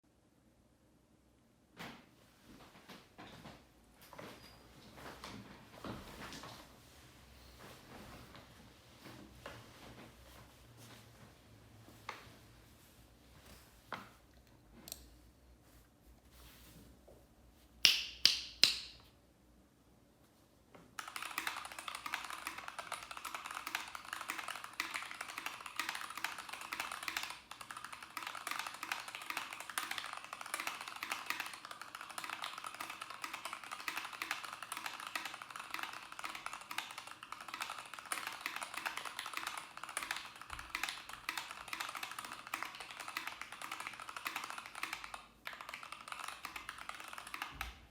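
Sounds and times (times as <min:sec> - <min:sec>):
fast typing on mechanical keyboard: 0:21.0 - 0:47.9.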